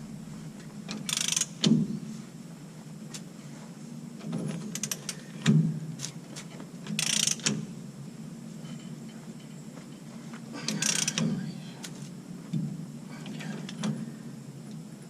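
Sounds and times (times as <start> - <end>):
hand ratchet clicking: 1.1 - 1.6, 7.0 - 7.5, 10.7 - 11.2.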